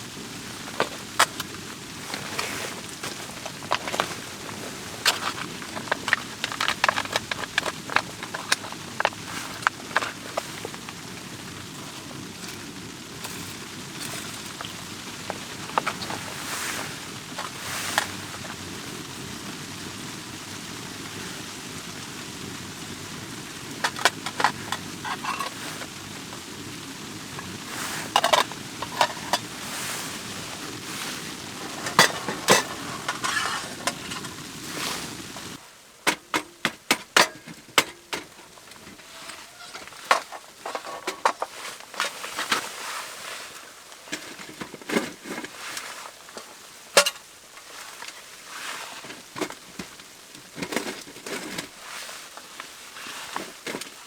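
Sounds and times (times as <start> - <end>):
low rush of stove: 0.0 - 36.6
wood fire crackling: 0.0 - 54.0.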